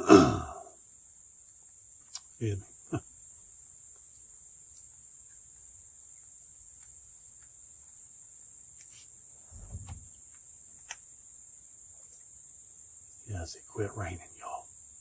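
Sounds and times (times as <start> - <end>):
insects chorus: 0.0 - 15.0
short low thump: 9.6 - 10.1.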